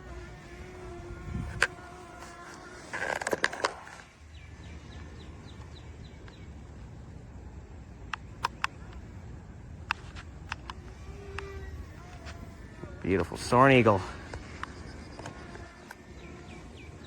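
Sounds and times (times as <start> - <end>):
low outdoor rumble: 0.0 - 17.0
small bird chirping: 3.6 - 7.0, 7.9 - 17.0
sharp clicks: 8.0 - 9.1, 9.8 - 12.4.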